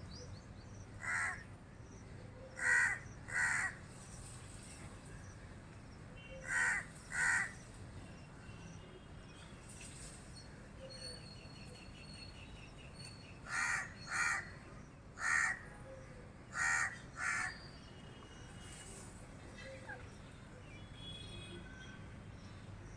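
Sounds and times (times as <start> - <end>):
crow cawing: 1.0 - 1.4, 2.6 - 3.8, 6.5 - 7.5, 13.5 - 14.5, 15.2 - 15.6, 16.5 - 17.5.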